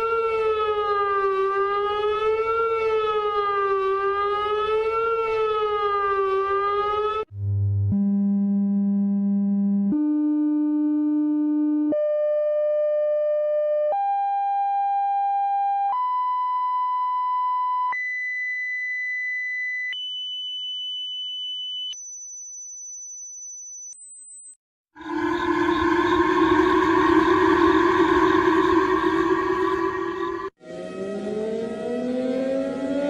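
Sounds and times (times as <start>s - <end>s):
electronic alert tones rising: 25.0s - 33.0s.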